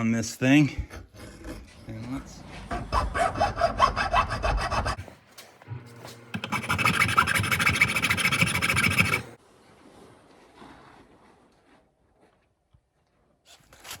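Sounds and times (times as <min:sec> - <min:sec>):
hand file rasping on steel: 0:02.7 - 0:05.1, 0:06.3 - 0:09.4.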